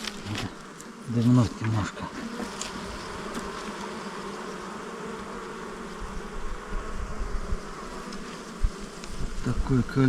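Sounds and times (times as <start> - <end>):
bees humming: 0.0 - 10.0.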